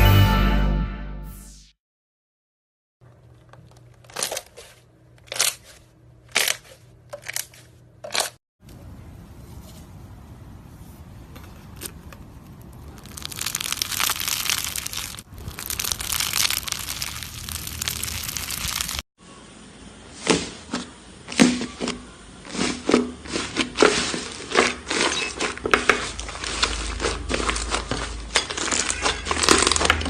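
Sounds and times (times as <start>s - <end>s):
slime crinkling and crackling: 11.7s - 19.0s, 22.5s - 30.0s
slime crunching and popping: 12.8s - 19.0s, 26.0s - 30.0s.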